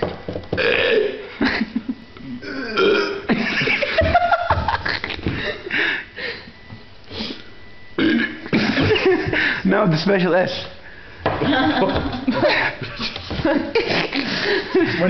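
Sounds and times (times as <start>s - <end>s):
person belching letters: 0.6s - 1.3s, 2.2s - 3.3s, 8.0s - 8.6s.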